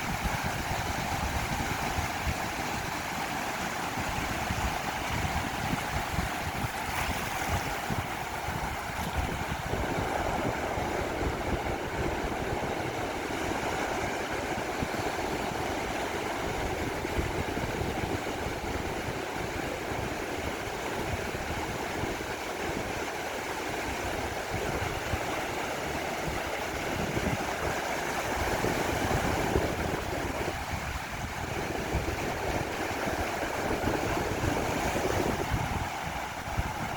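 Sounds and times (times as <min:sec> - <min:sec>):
surf washing onto beach: 0:00.0 - 0:36.9
wind rumbling on microphone: 0:00.0 - 0:36.9.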